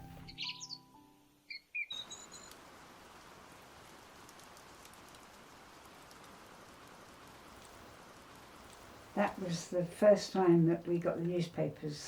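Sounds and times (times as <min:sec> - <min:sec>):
faint bird chirps: 0:00.2 - 0:00.9, 0:01.5 - 0:02.6
faint background hiss: 0:01.0 - 0:12.0.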